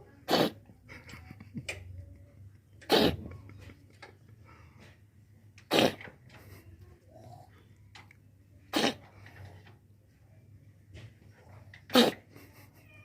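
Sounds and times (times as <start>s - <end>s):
cat coughing: 0.3s - 0.7s, 2.8s - 3.4s, 5.6s - 6.1s, 8.7s - 9.1s, 11.9s - 12.4s.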